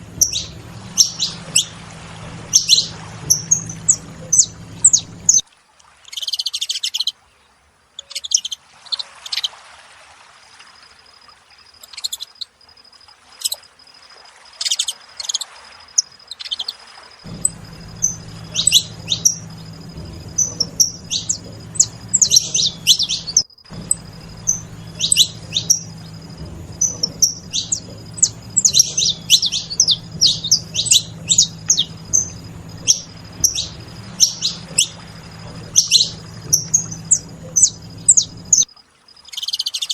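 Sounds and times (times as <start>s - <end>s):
finches chirping: 0.0s - 5.4s, 17.3s - 38.7s.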